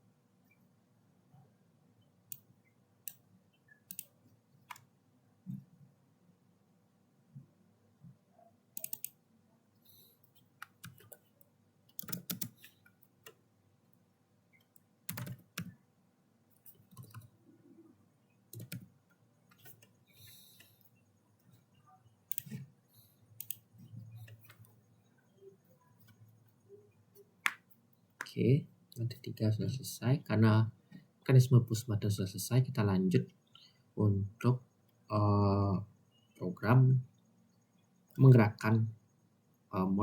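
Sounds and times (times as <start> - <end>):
mouse and keyboard clicks: 3.1 - 4.9, 8.8 - 9.2, 10.3 - 13.4, 16.6 - 17.3, 18.5 - 18.9, 22.3 - 22.7, 23.4 - 24.8.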